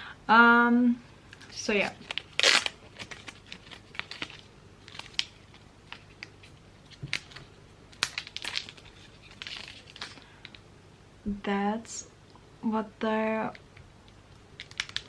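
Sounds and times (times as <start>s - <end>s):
packaging rustle: 1.4s - 10.6s, 14.6s - 15.0s.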